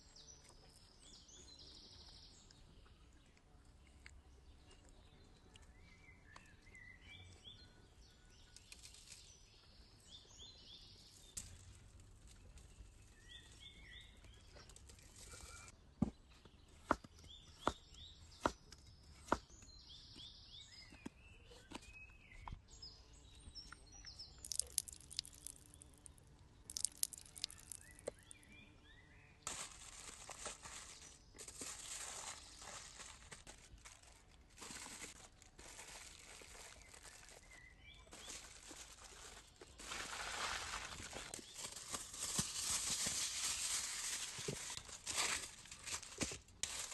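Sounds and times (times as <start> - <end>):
small birds chirping: 0.0 - 44.9
crackling and rustling handling noise: 24.4 - 28.4, 29.4 - 46.9.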